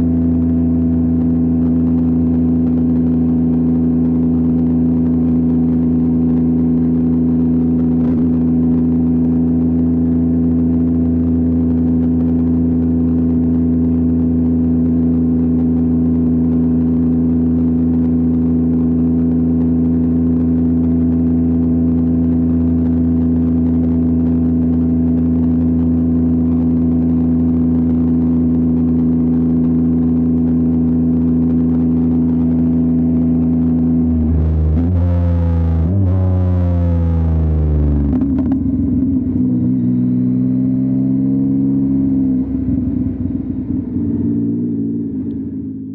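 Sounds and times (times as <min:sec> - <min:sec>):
motorcycle engine running steadily: 0:00.0 - 0:45.9.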